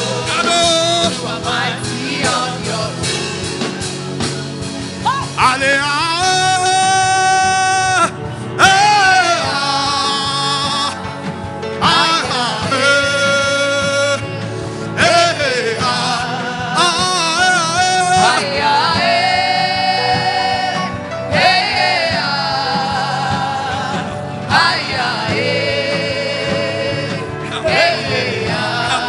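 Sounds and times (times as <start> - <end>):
steady musical accompaniment: 0.0 - 29.0
person singing with vibrato: 11.8 - 29.0.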